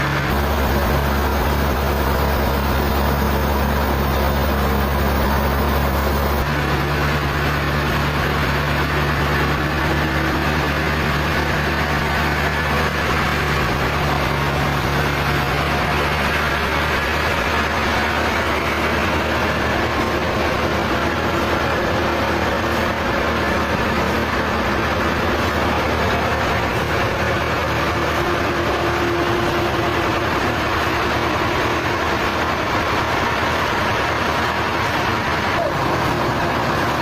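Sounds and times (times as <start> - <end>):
low engine hum: 0.0 - 37.0
sawmill machinery running: 0.0 - 37.0.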